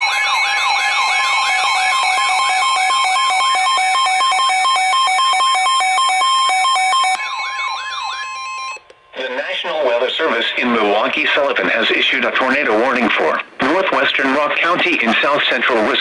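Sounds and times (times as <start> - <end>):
siren-like alarm warble: 0.0 - 9.9
steady high tone: 0.0 - 12.0.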